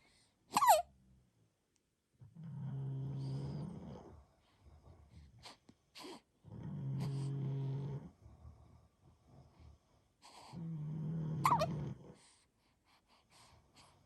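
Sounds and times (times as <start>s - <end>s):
low steady hums: 0.0s - 12.2s
baby hiccuping: 0.5s - 0.9s, 11.4s - 11.7s.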